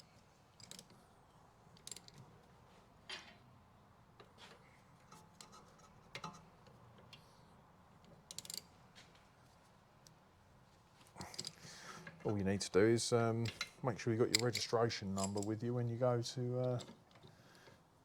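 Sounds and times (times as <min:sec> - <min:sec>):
metallic clinks of tools: 0:14.3 - 0:15.6.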